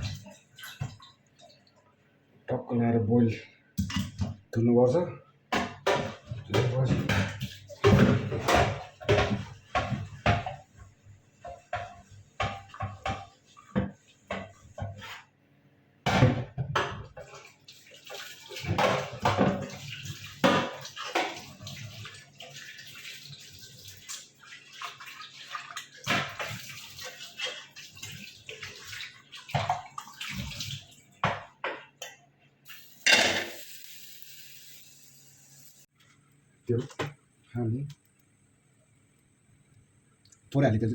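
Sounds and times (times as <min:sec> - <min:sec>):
water splashing and sloshing: 0:00.0 - 0:02.4, 0:05.6 - 0:15.4, 0:16.1 - 0:33.5.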